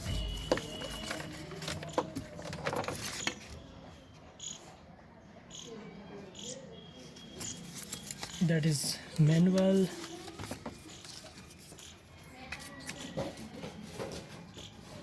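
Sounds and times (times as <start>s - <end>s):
packaging clicks and rustles: 0.0s - 3.6s, 7.4s - 14.4s.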